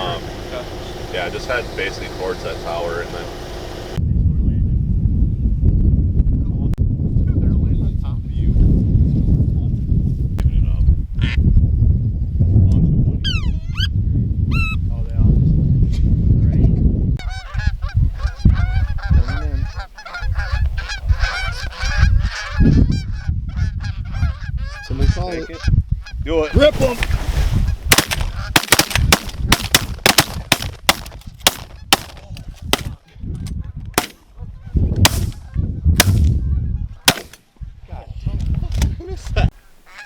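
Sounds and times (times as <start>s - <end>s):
geese honking: 17.2s - 26.6s, 27.9s - 30.3s, 39.8s - 40.0s.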